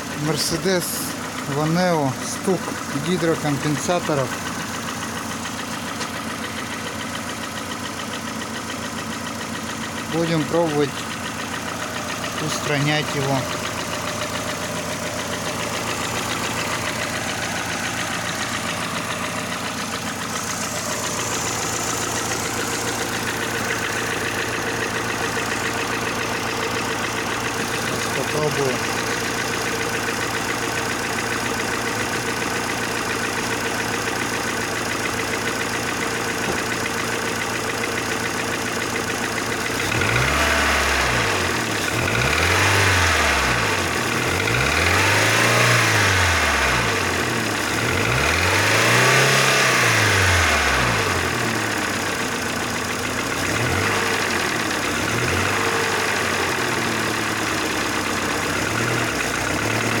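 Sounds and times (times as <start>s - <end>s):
car engine idling and revving: 0.0s - 60.0s.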